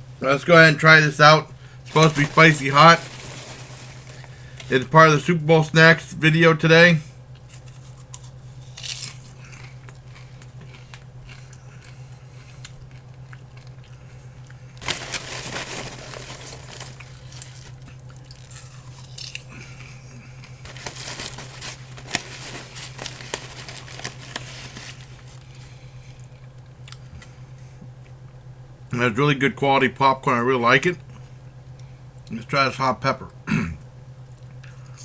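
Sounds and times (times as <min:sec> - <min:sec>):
steady low hum: 0:00.0 - 0:35.0
paper bag crinkling: 0:01.9 - 0:04.9, 0:14.8 - 0:17.8, 0:20.5 - 0:25.6.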